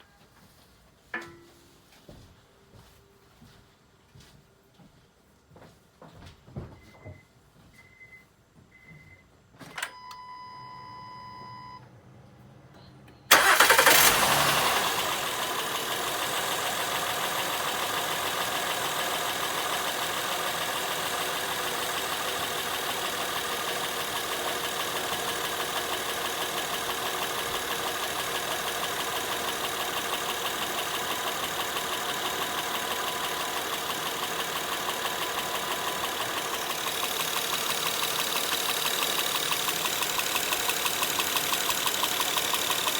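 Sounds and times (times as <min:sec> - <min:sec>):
car engine starting and idling: 0:13.3 - 0:42.9.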